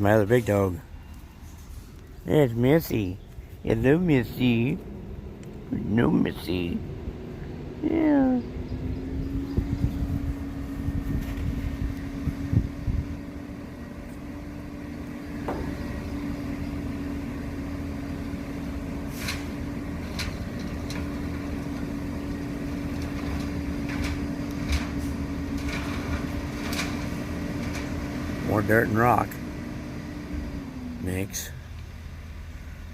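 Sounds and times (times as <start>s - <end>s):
machinery engine hum: 0.0s - 32.9s.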